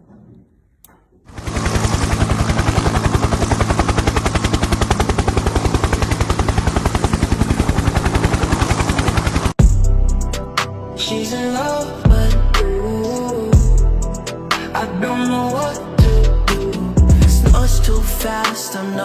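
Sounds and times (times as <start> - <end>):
helicopter rotor blades chopping: 1.3 - 9.9.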